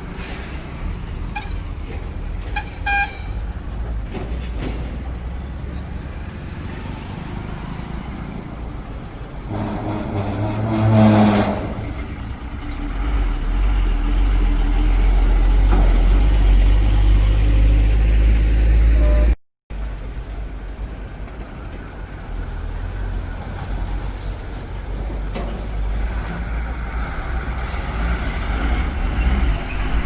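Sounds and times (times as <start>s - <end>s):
truck engine rumbling close by: 0.0s - 19.4s
heavy highway traffic: 0.0s - 30.0s
truck passing loudly: 5.1s - 19.4s, 25.7s - 30.0s.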